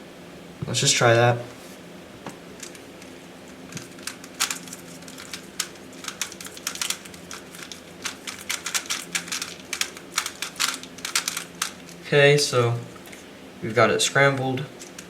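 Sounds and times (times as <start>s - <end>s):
puzzle cube layers clacking: 3.8s - 11.9s.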